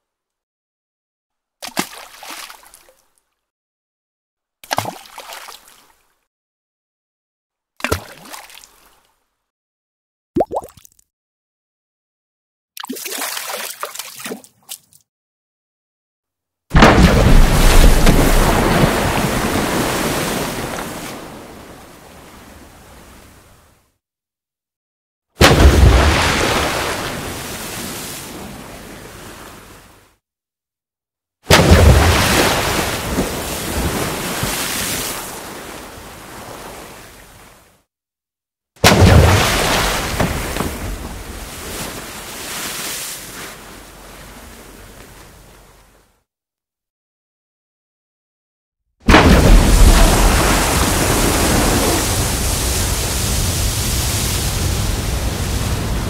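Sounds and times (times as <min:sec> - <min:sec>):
big water splash: 0:16.7 - 0:22.4, 0:25.4 - 0:28.6, 0:31.5 - 0:36.7, 0:38.8 - 0:44.0, 0:49.1 - 0:56.0.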